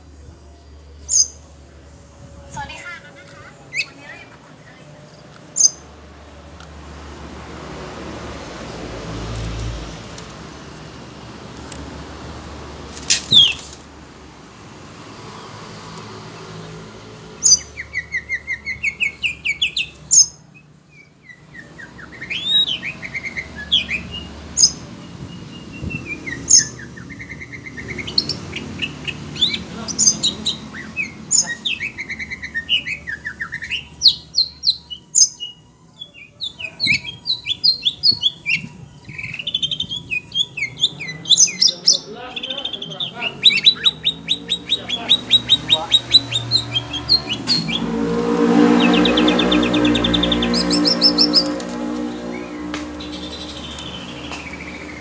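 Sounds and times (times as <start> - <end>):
bird chirping and whistling: 13.0 - 13.8, 17.4 - 20.4, 21.0 - 24.8, 25.5 - 55.0.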